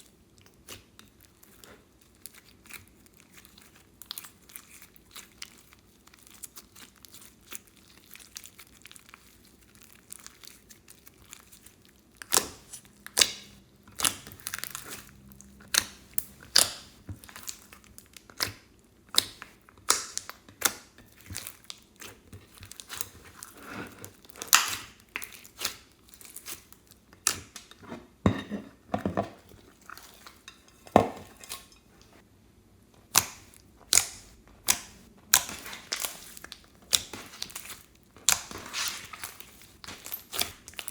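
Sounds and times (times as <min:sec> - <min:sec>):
slime popping and crackling: 0:02.2 - 0:27.4, 0:33.1 - 0:40.9.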